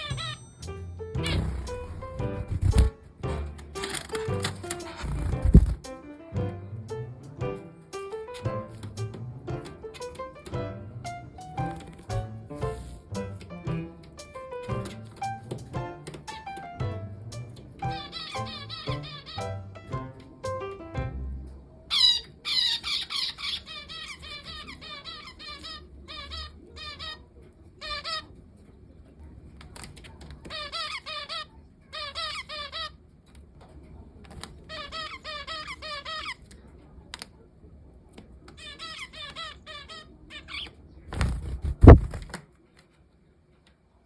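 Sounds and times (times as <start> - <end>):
finch singing: 0.0 - 0.6, 1.2 - 5.8, 17.8 - 20.0
loud thump: 41.6 - 42.3.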